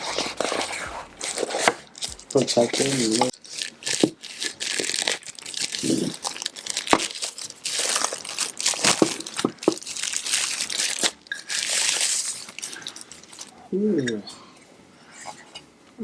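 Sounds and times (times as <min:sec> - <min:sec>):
packaging crinkling: 0:00.0 - 0:13.6.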